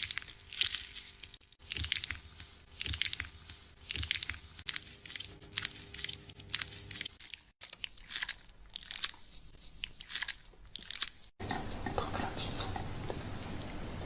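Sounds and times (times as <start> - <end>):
fingers scrubbing hair: 0.0 - 14.0.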